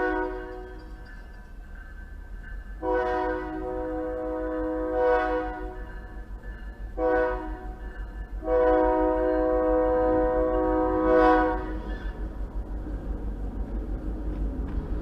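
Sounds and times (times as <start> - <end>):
locomotive air horn blasts: 0.0 - 0.8, 2.8 - 5.8, 7.0 - 7.8, 8.4 - 11.9.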